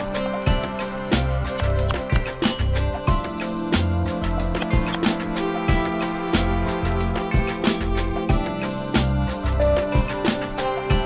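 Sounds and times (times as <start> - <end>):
background music with steady beat: 0.0 - 11.0
plucked guitar-like melody: 0.0 - 11.0.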